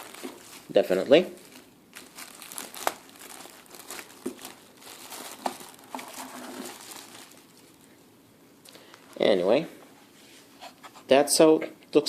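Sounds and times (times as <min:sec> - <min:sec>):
plastic bag crinkling: 0:00.0 - 0:08.0, 0:08.7 - 0:09.6.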